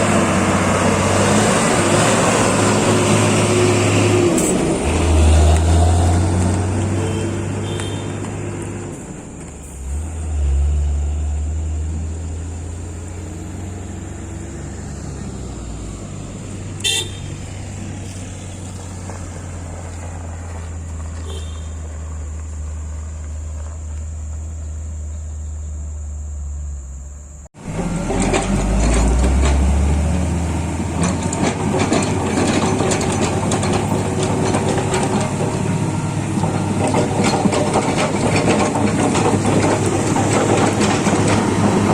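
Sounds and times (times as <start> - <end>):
diesel engine running: 0.0 - 41.9
dense engine clattering: 27.6 - 41.9.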